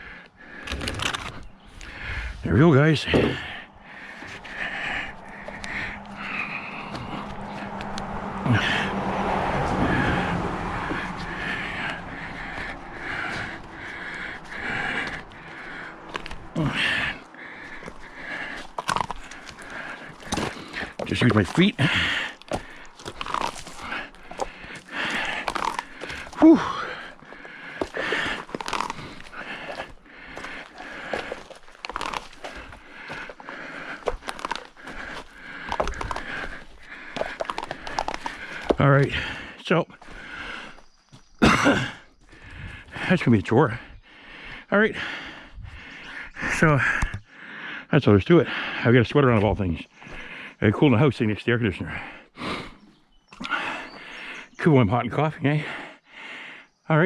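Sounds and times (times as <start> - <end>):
heavy panting breaths: 0.0 - 56.8
cable scraping and crackling: 0.5 - 3.4, 17.8 - 38.8.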